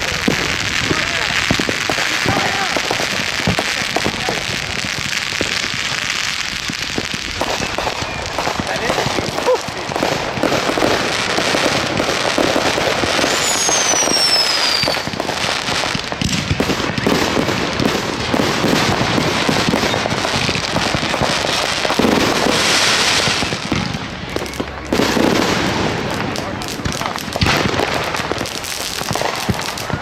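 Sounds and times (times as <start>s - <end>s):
fireworks crackling and banging: 0.0s - 30.0s
firework whistle falling in pitch: 13.2s - 15.1s.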